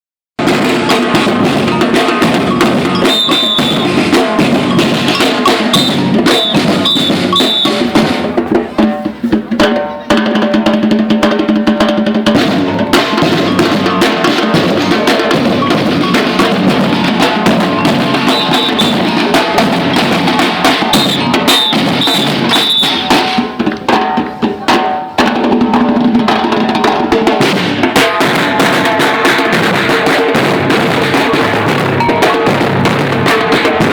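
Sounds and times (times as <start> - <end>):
cowbell: 0.4 - 8.1, 12.4 - 25.2, 28.1 - 33.9
bass drums: 0.4 - 33.9
snare drums: 0.4 - 33.9.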